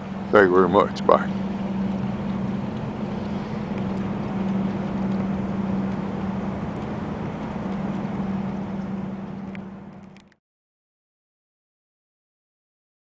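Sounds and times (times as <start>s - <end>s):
vehicle engine humming: 0.0s - 10.4s.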